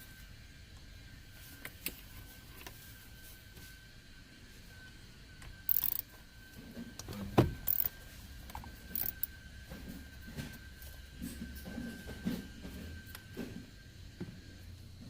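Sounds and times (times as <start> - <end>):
metal hand tools clinking: 9.0 - 9.3.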